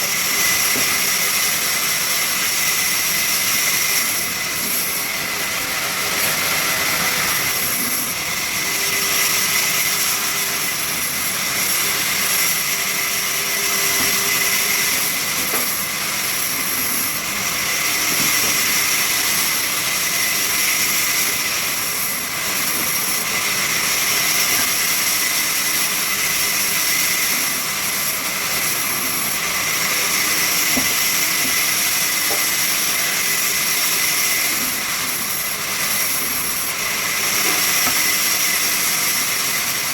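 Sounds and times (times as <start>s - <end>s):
sawmill machinery hiss and whine: 0.0s - 39.9s.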